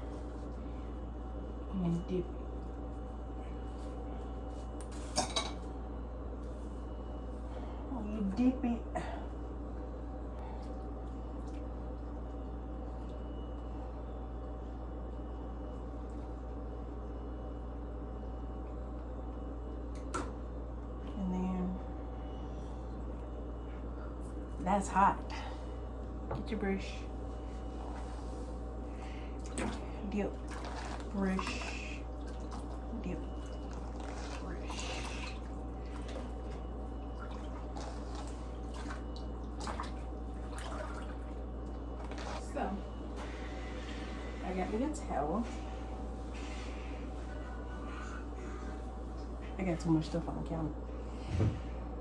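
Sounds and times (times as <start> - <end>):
low hum and hiss: 0.0 - 52.0
water dripping and splashing: 29.4 - 42.3.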